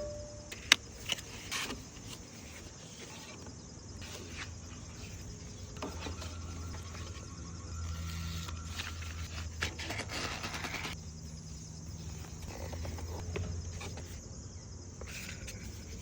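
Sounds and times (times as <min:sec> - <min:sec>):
low steady hum: 0:00.0 - 0:03.4
cardboard packaging handled: 0:07.9 - 0:11.0.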